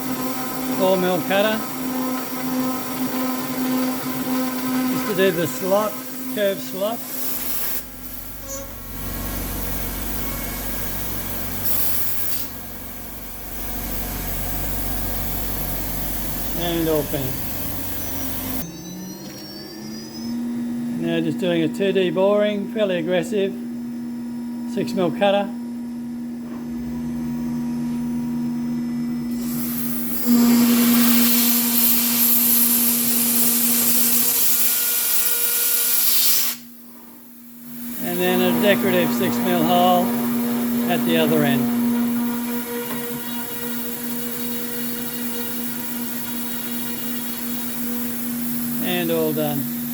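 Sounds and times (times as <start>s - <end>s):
router spindle cutting metal: 0.0s - 18.6s, 29.3s - 36.6s, 37.7s - 49.9s
hiss of cutting and coolant spray: 29.3s - 36.6s.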